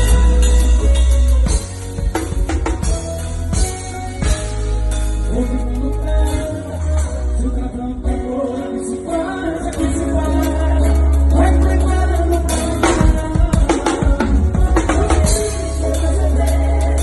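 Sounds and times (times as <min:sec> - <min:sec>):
heavy bass: 0:00.0 - 0:17.0
live band playing: 0:00.0 - 0:17.0
person singing: 0:03.6 - 0:17.0.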